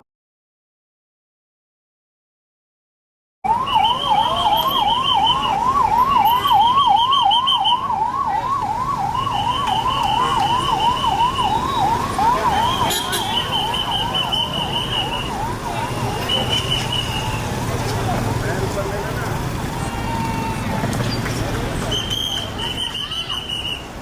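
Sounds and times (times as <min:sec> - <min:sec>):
higher-pitched siren tone: 0:03.5 - 0:17.6
vehicle siren yelping: 0:03.5 - 0:24.0.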